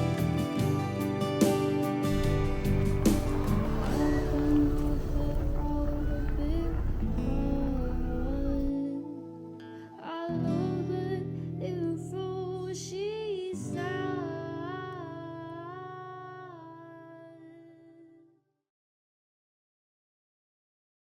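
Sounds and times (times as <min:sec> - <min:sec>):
background music with held notes: 0:00.0 - 0:15.2.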